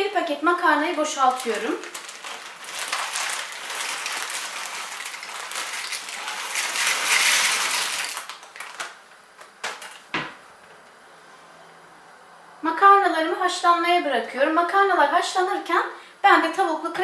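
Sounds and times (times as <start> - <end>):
dry pasta pouring into pot: 1.2 - 8.9.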